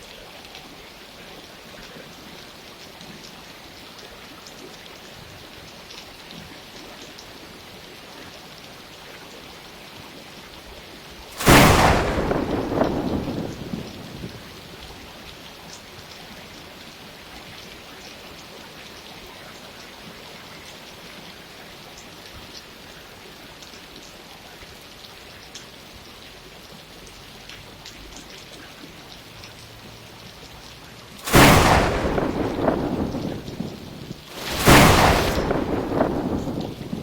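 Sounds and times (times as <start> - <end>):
steady rain: 0.0 - 37.0
thunderclap rumbling: 11.4 - 15.1, 31.2 - 37.0.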